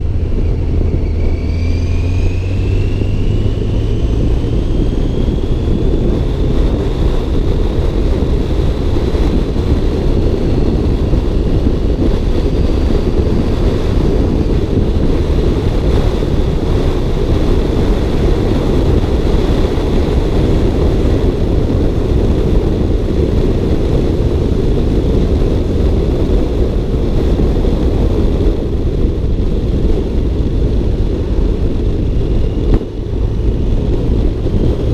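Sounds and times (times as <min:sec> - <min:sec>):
thin rising whine: 0:00.0 - 0:23.1
car engine and road rumble: 0:00.0 - 0:34.9.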